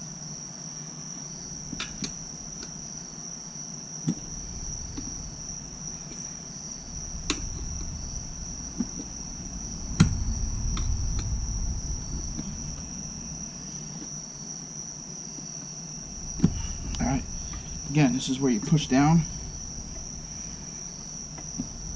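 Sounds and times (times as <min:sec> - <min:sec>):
crickets trilling: 0:00.0 - 0:21.9
tire clicks and knocks on rim: 0:04.0 - 0:13.0, 0:16.2 - 0:17.9.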